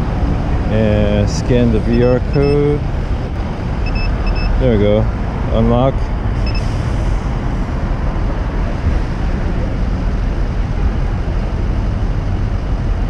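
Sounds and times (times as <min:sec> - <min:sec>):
street traffic noise: 0:00.0 - 0:13.0
short high electronic beep: 0:01.9 - 0:02.7, 0:03.8 - 0:04.6.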